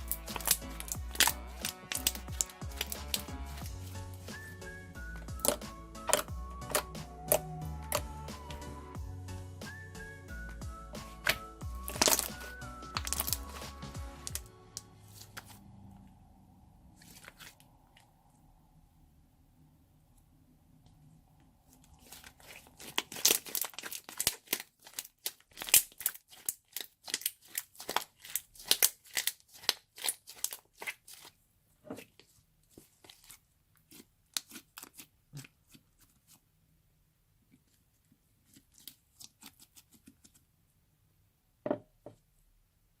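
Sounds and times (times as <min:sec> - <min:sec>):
slime crackling and popping: 0:00.0 - 0:03.8, 0:05.3 - 0:08.6, 0:11.2 - 0:13.6, 0:21.9 - 0:31.3.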